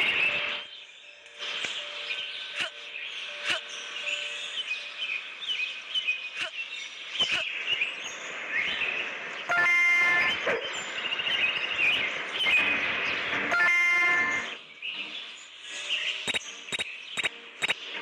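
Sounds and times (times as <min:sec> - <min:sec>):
birds chirping: 0:00.0 - 0:18.0
loud horn-like honk: 0:09.5 - 0:10.6, 0:13.4 - 0:14.6
sharp clicks: 0:16.3 - 0:17.8.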